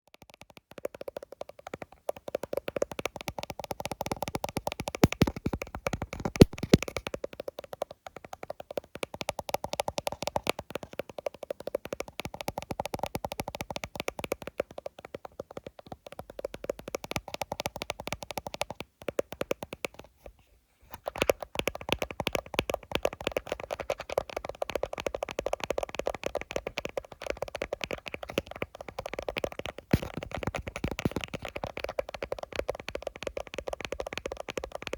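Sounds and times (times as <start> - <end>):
fingernail tapping on phone: 0.1 - 20.2, 20.9 - 34.9.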